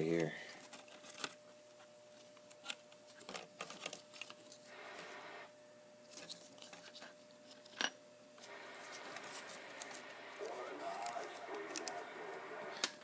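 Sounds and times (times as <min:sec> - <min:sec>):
plastic parts clicking and rubbing: 0:02.2 - 0:04.6.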